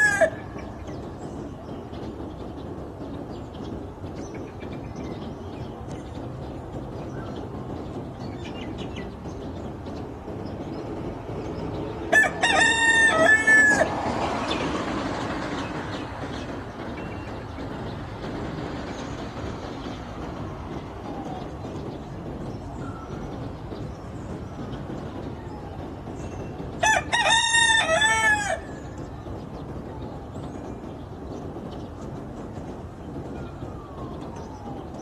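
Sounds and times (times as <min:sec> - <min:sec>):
low rumbling noise: 0:00.0 - 0:35.0
rooster crowing: 0:12.1 - 0:14.0, 0:26.8 - 0:28.7.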